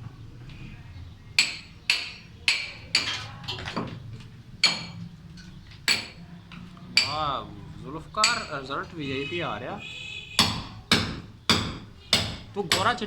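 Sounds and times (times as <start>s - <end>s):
hammer striking steel chisel: 1.4s - 3.2s, 4.6s - 5.0s, 5.9s - 6.2s, 7.0s - 7.2s, 8.2s - 8.7s, 10.4s - 13.0s.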